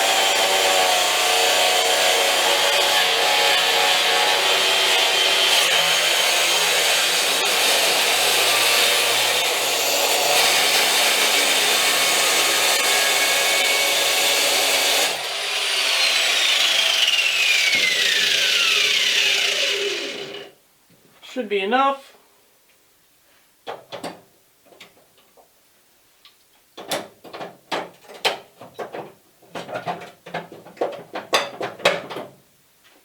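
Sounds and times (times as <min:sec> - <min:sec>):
power tool cutting and spinning down: 0:00.0 - 0:20.5.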